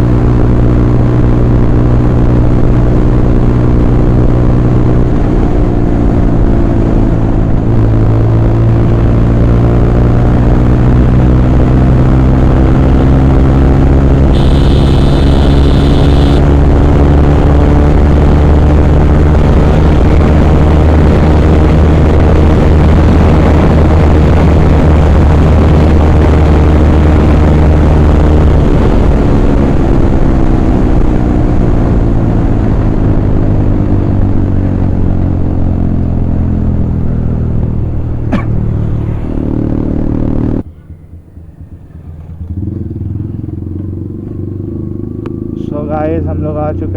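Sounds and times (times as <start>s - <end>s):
motorcycle engine running: 0.0s - 46.9s
high steady tone: 14.3s - 16.4s.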